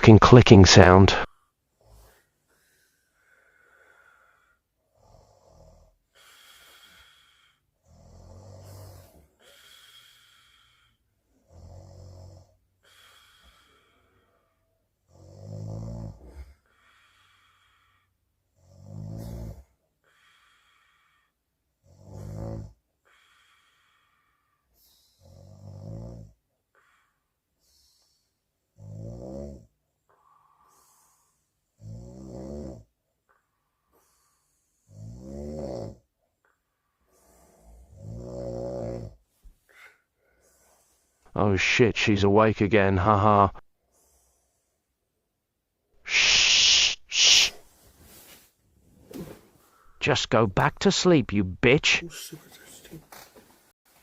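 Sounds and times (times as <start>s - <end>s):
woman snoring: 15.2s - 16.5s, 21.9s - 22.8s, 31.8s - 32.9s, 34.9s - 36.0s, 37.7s - 39.2s.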